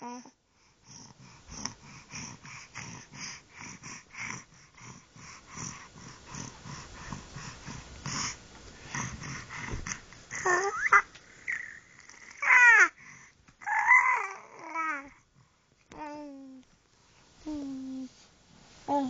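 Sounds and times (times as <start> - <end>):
baby panting: 0.6 - 16.2
baby squealing: 10.5 - 11.8.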